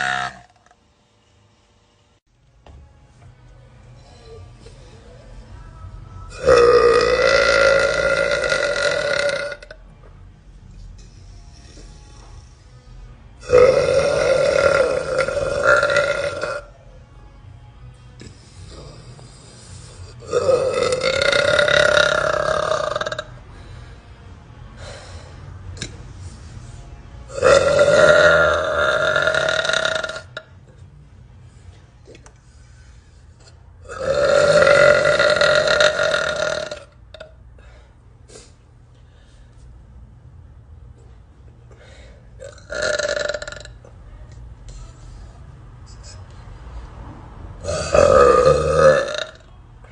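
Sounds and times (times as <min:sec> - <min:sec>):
woman burping: 0:00.0 - 0:00.6, 0:06.4 - 0:09.7, 0:13.4 - 0:16.7, 0:20.2 - 0:23.2, 0:27.3 - 0:30.5, 0:47.6 - 0:49.4.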